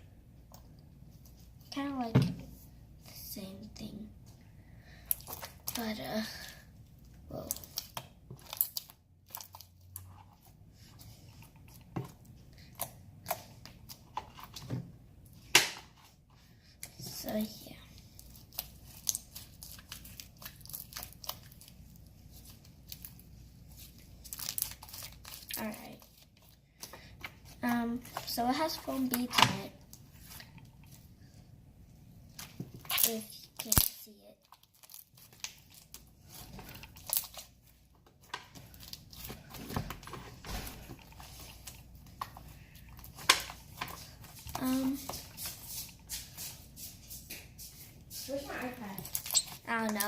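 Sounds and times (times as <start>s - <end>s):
slime crackling and popping: 7.3s - 10.1s, 18.2s - 22.0s, 32.4s - 37.5s.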